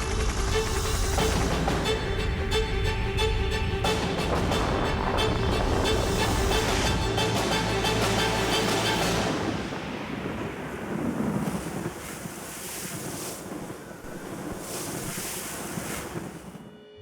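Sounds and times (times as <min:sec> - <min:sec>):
wind rushing: 0:00.0 - 0:16.7.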